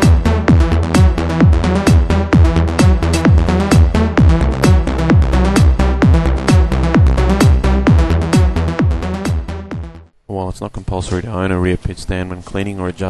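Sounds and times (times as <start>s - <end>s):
deep kick drum: 0.0s - 10.1s
electronic trance music: 0.0s - 10.1s.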